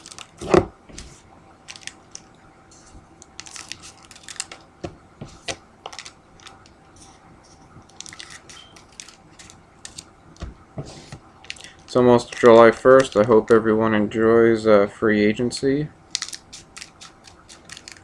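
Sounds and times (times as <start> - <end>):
wrappers crinkling: 0.0 - 0.5, 1.6 - 2.3, 3.2 - 4.6, 5.9 - 6.7, 7.9 - 10.1, 11.4 - 13.4, 16.1 - 18.0
scissors snipping packs: 16.2 - 18.0.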